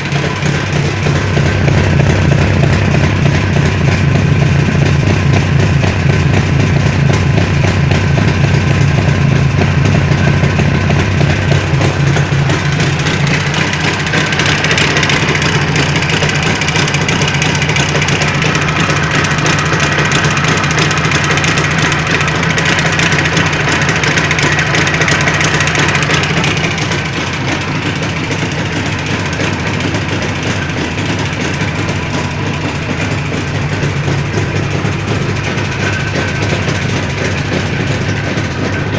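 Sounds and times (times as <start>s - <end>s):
engine knocking: 0.0s - 38.9s
two-stroke engine running: 0.0s - 38.9s.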